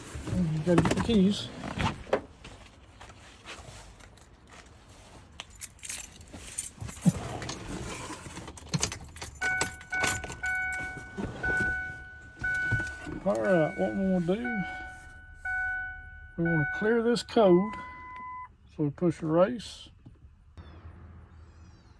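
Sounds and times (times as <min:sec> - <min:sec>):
keys jangling: 0:05.4 - 0:07.6, 0:08.5 - 0:10.9
electronic chime beeping: 0:09.4 - 0:18.5.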